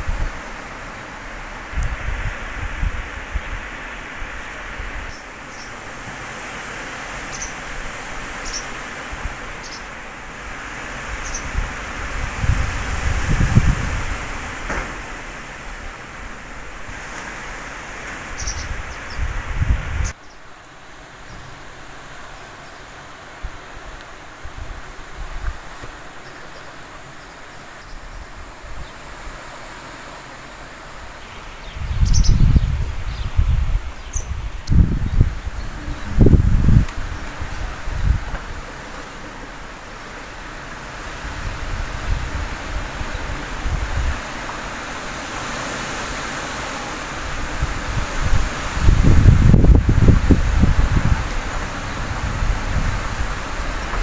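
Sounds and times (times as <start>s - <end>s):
wind buffeting microphone: 0.0s - 20.2s, 30.8s - 54.0s
wind rustling leaves: 0.0s - 54.0s.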